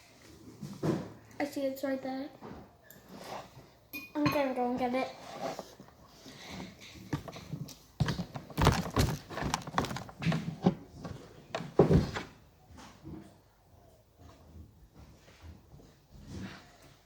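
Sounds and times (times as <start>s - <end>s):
footsteps on hard floor: 7.0s - 11.2s.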